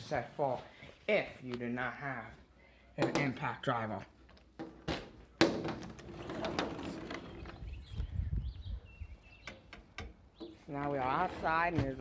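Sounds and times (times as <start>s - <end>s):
sharp knocks and handling thumps: 4.3s - 7.7s, 9.4s - 12.0s
wind rumble on microphone: 7.2s - 9.4s.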